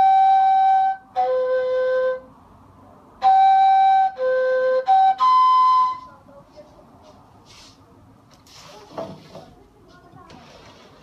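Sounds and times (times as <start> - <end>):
breathy reed flute notes: 0.0 - 2.3, 3.2 - 6.1.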